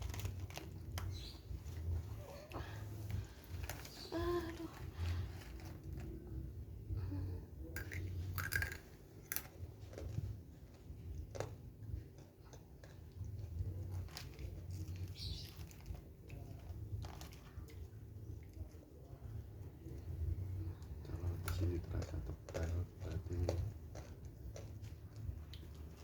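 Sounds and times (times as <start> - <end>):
small clicks and rustles: 0.0 - 6.2, 9.4 - 18.8.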